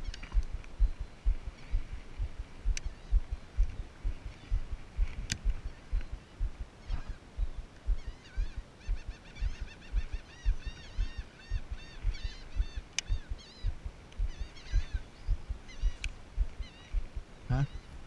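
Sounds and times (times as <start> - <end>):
low thumps: 0.0 - 17.3
bird calling: 0.0 - 18.0.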